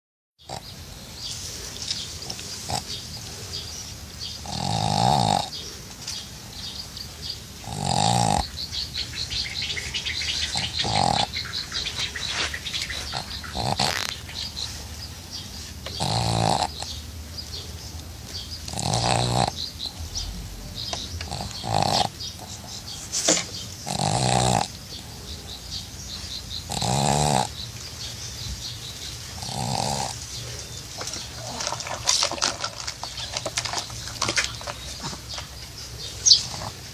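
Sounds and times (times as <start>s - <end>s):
dog snoring: 2.6s - 3.0s, 4.3s - 5.7s, 7.6s - 8.6s, 10.4s - 12.1s, 12.9s - 14.6s, 15.8s - 17.0s, 18.6s - 23.0s, 23.8s - 25.0s, 26.6s - 27.6s, 29.4s - 30.6s.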